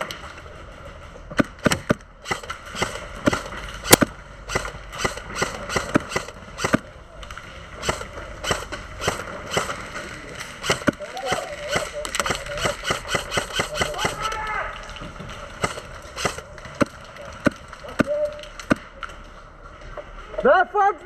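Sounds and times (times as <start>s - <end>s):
airsoft gun shots: 1.4s - 6.9s, 7.8s - 14.6s, 15.6s - 18.8s.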